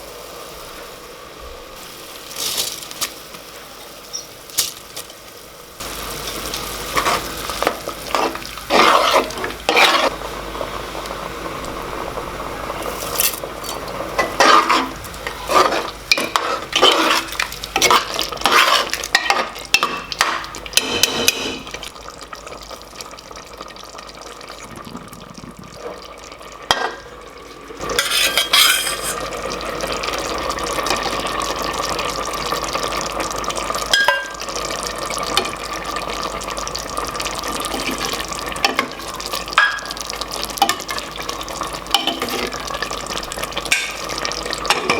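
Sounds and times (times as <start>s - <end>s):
food sizzling: 0.0s - 44.9s
spoon scraping a metal pot: 8.1s - 10.1s, 13.2s - 19.6s, 27.8s - 29.4s.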